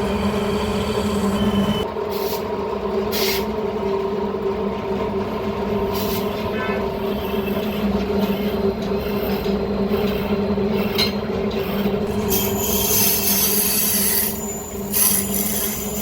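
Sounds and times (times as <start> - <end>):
metal lathe humming: 0.0 - 1.9, 12.0 - 16.0.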